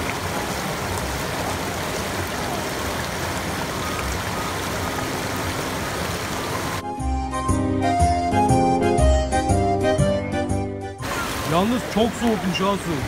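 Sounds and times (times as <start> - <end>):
rushing stream water: 0.0 - 6.9, 11.0 - 13.0.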